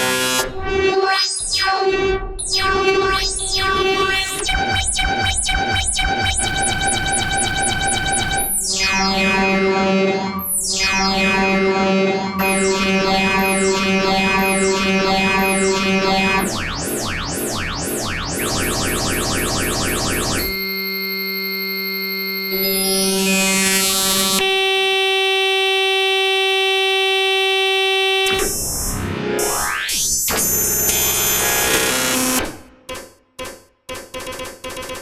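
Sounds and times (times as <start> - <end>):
dense synthesized keyboard music: 4.2 - 20.6.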